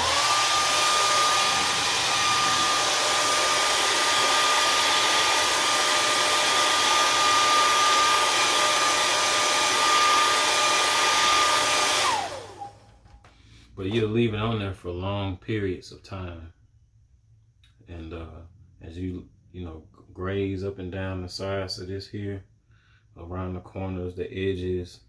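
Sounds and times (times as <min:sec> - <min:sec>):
blow dryer running: 0:00.0 - 0:13.4.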